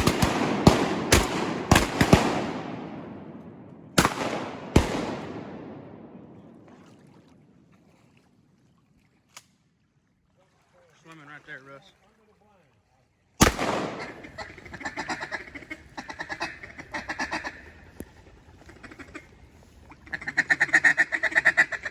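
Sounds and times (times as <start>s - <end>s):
echoing shotgun blasts: 0.0s - 7.0s, 13.4s - 15.2s.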